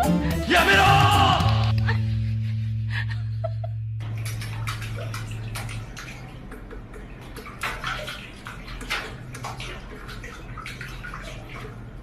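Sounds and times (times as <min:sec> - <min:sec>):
steady low hum: 0:01.7 - 0:12.0
water splashing and sloshing: 0:04.0 - 0:12.0.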